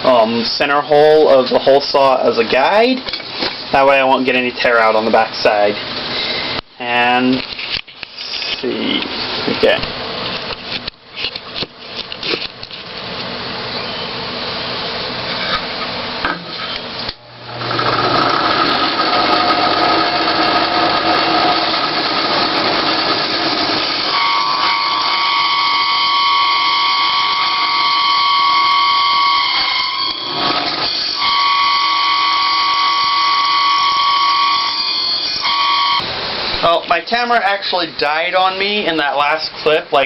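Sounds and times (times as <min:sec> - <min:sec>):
hole saw cutting wood: 0:17.6 - 0:35.6
high-pitched saw squeal: 0:21.4 - 0:36.0.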